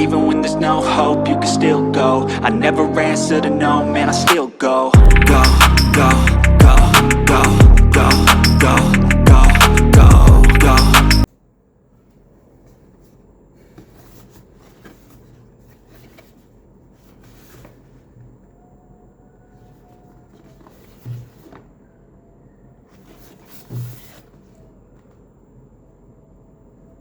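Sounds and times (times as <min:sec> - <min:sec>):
dull thumps: 0:20.4 - 0:21.7.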